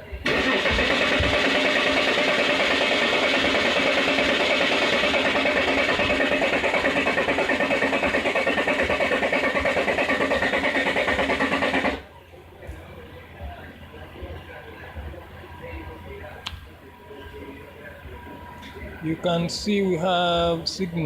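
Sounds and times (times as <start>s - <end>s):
diesel engine cranking on starter: 0.2s - 12.1s.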